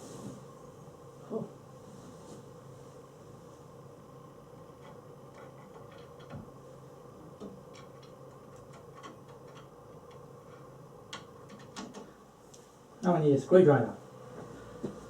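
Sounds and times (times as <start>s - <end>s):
low steady hum: 0.0s - 15.0s
small parts clicking and tapping: 4.7s - 6.5s, 7.3s - 12.1s.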